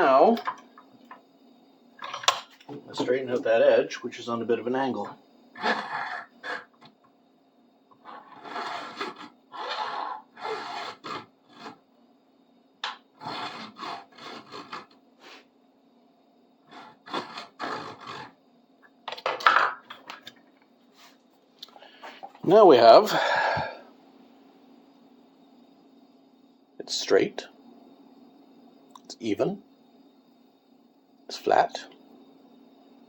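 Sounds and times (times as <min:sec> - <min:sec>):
hand file rasping on metal: 0:08.0 - 0:11.8, 0:13.2 - 0:15.0, 0:16.7 - 0:18.3.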